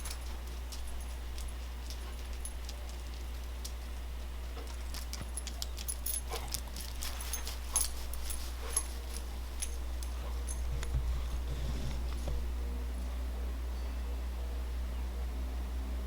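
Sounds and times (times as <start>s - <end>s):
dog collar tags jingling: 0.0s - 3.6s, 4.6s - 11.5s
steady low hum: 0.0s - 16.0s.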